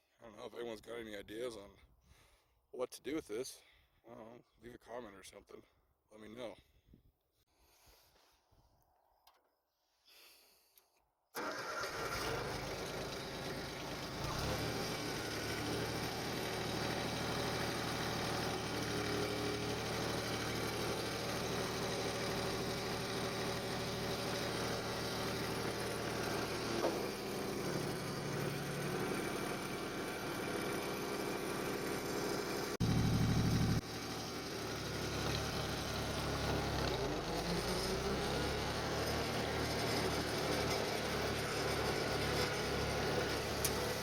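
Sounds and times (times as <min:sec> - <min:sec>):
tractor engine pulling mower: 0:11.4 - 0:44.0.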